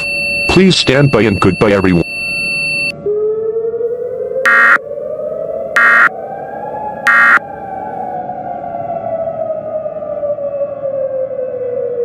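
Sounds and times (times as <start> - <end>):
siren wail: 2.9 - 12.0
harsh electronic data bursts: 4.5 - 4.8, 5.8 - 6.1, 7.1 - 7.4.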